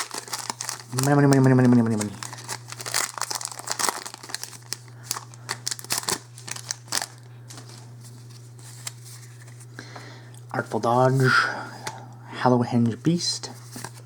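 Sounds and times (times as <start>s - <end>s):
foil wrapper crinkling and tearing: 0.0s - 9.5s.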